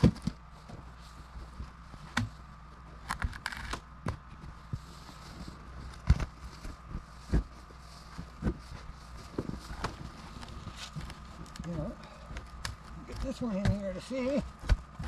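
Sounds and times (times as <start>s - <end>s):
knocks and scrapes of log: 0.0s - 15.0s.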